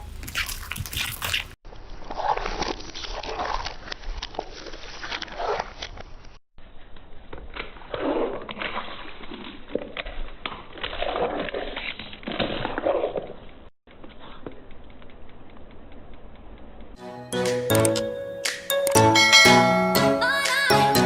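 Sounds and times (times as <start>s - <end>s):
crisp food crunching: 0.0s - 6.2s.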